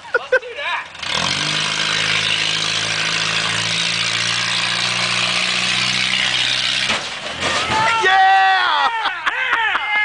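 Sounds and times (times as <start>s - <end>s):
car engine revving hard: 0.9s - 7.1s.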